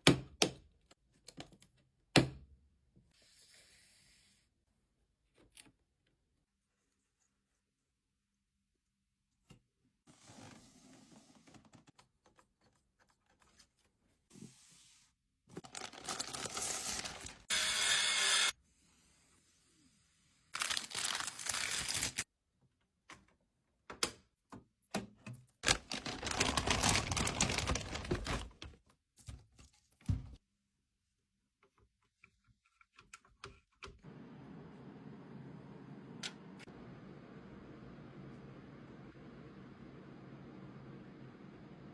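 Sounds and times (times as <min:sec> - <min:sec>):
packaging tearing and crinkling: 0:15.6 - 0:17.5, 0:20.6 - 0:22.2, 0:25.6 - 0:28.5.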